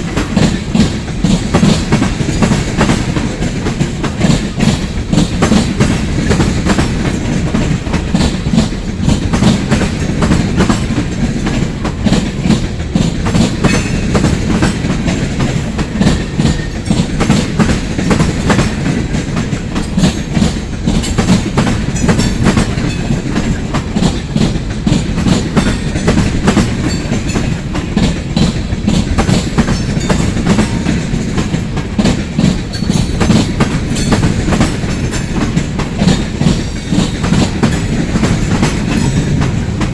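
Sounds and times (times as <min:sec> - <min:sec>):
low train rumble: 0:00.0 - 0:39.9
train wheels clattering over rail joints: 0:00.0 - 0:39.9.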